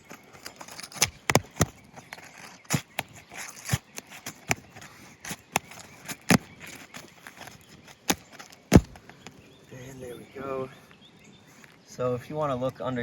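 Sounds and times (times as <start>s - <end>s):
shingles cracking and snapping: 0.0s - 9.5s.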